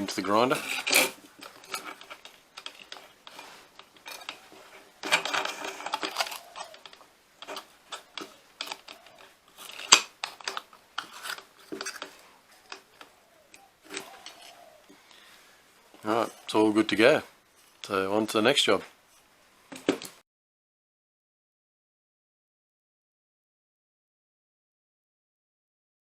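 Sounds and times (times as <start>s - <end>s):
metal clicks and rattles: 0.0s - 14.7s.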